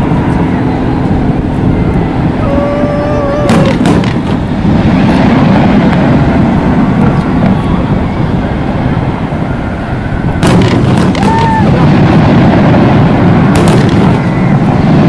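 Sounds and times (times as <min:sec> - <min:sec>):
loud low rumble: 0:00.0 - 0:15.0
firework whistle: 0:02.4 - 0:04.4, 0:10.2 - 0:15.0
firework cracks: 0:03.5 - 0:06.1, 0:10.4 - 0:15.0.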